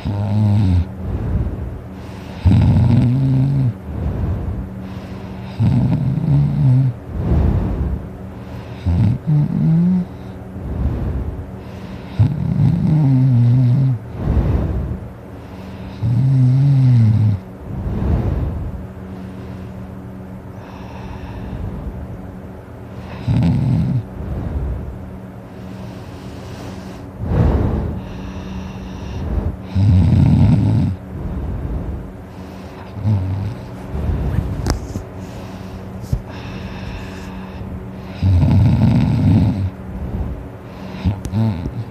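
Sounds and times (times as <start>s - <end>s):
person snoring loudly: 0.0s - 0.9s, 2.4s - 3.8s, 5.5s - 7.0s, 8.8s - 10.2s, 12.2s - 14.0s, 16.0s - 17.4s, 23.0s - 24.1s, 27.2s - 31.0s, 32.8s - 33.7s, 38.0s - 39.7s, 40.8s - 41.9s
breathy rush of air: 0.9s - 2.4s, 3.7s - 5.4s, 6.9s - 8.7s, 10.3s - 12.1s, 14.0s - 16.0s, 17.4s - 23.0s, 24.0s - 29.8s, 31.0s - 38.2s, 39.7s - 41.2s.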